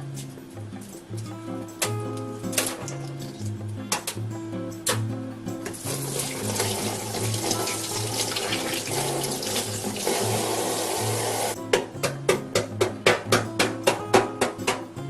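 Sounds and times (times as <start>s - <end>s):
tap water running into sink: 5.7s - 11.6s.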